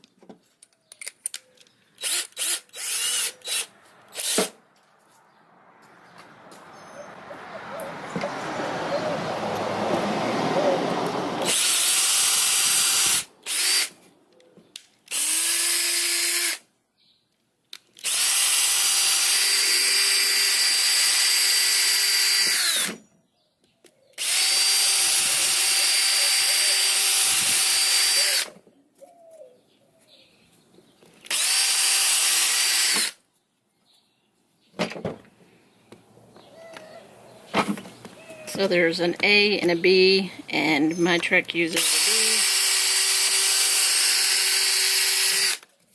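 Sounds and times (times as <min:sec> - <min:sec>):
electric power drill running: 0:02.0 - 0:04.5, 0:11.4 - 0:13.9, 0:15.1 - 0:16.6, 0:18.0 - 0:23.0, 0:24.2 - 0:28.6, 0:31.3 - 0:33.2, 0:41.8 - 0:45.6.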